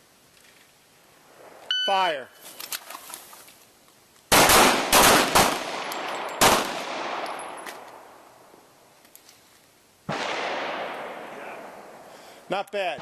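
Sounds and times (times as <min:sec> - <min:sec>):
handgun shots echoing: 0:04.3 - 0:07.9.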